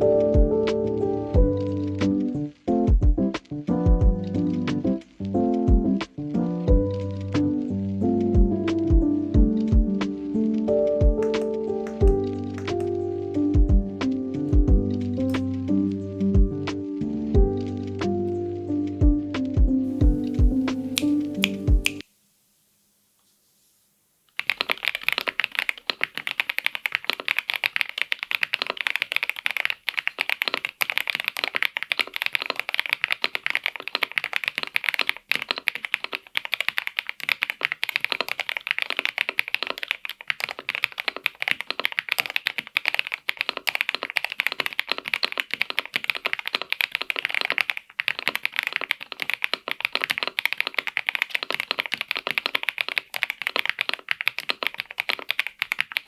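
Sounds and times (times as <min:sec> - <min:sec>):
mechanical keyboard typing: 0:11.2 - 0:13.0, 0:19.9 - 0:22.0, 0:24.4 - 0:56.0.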